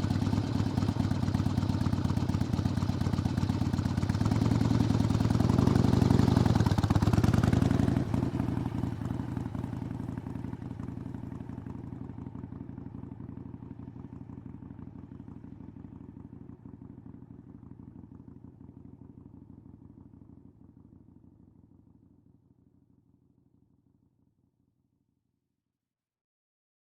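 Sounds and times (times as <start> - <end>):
motorcycle pulling away: 0.0 - 11.3.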